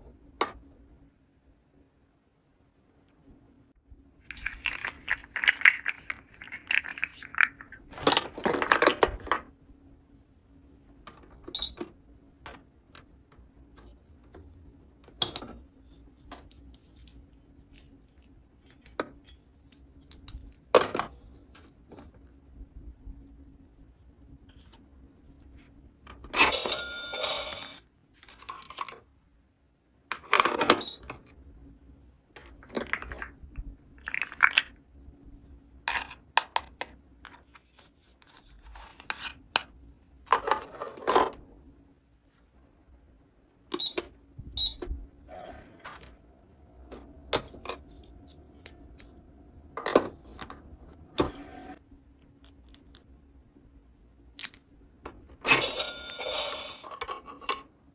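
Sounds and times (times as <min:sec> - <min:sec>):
faint steady hum: 0:00.0 - 0:57.9
plastic toy pieces clicking: 0:04.3 - 0:07.8, 0:34.0 - 0:34.7.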